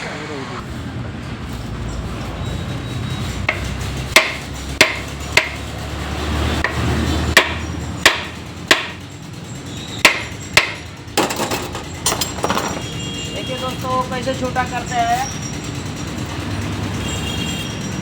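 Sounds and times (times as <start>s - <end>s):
hammer striking metal: 3.5s - 5.8s, 6.6s - 13.1s.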